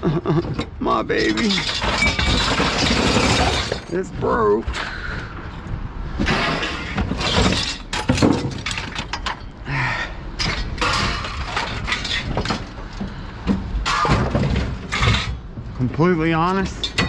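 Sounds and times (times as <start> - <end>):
broken glass clinking and crunching: 1.1 - 4.0, 6.3 - 9.5, 10.4 - 12.8, 13.8 - 15.4
clattering knocks: 6.2 - 9.5, 10.4 - 15.8.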